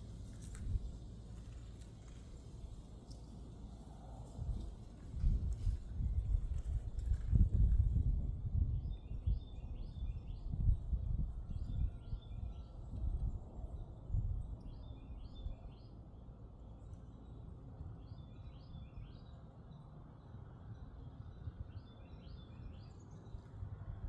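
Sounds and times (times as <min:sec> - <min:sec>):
wind on microphone: 0:04.3 - 0:15.6
songbird chirping: 0:08.8 - 0:24.0.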